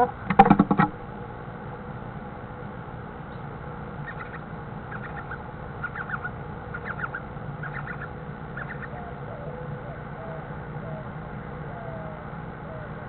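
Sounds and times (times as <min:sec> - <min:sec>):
steady low hum: 0:00.0 - 0:13.0
chick peeping inside egg: 0:04.0 - 0:08.9.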